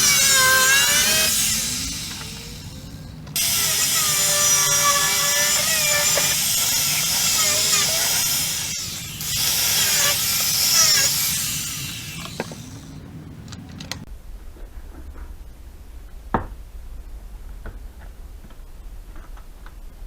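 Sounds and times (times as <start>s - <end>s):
power tool running under load: 0.0s - 13.0s.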